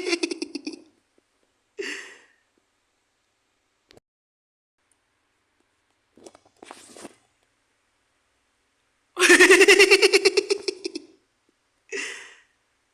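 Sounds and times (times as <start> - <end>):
high-pitched cartoon laugh: 0.0 - 0.8, 9.2 - 11.1.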